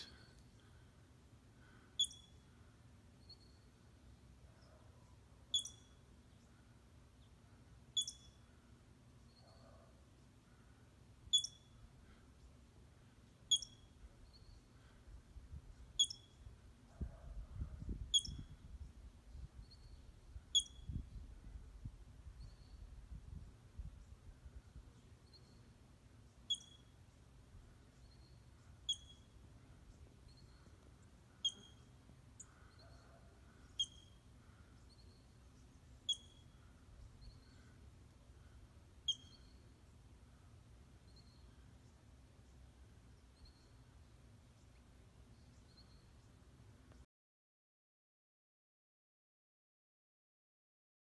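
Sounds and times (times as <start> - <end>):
squirrel alarm calls: 2.0 - 2.4, 5.5 - 6.0, 8.0 - 8.4, 11.3 - 11.8, 13.5 - 13.9, 16.0 - 16.4, 18.1 - 18.6, 20.5 - 21.0, 26.5 - 26.9, 28.1 - 29.4, 31.3 - 32.9, 33.5 - 34.2, 36.0 - 37.6, 39.0 - 39.6.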